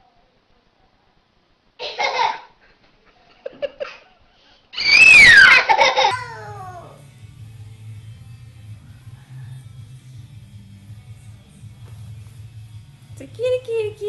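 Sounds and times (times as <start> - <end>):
baby squealing laugh: 4.8 - 6.9
baby laughing: 5.4 - 6.9.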